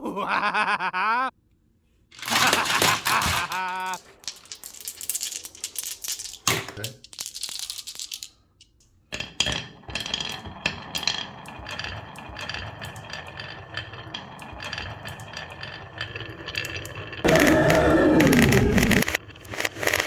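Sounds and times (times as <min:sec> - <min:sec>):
marbles rolling on wooden track: 0:02.1 - 0:20.0
loud falling tones: 0:17.2 - 0:19.2.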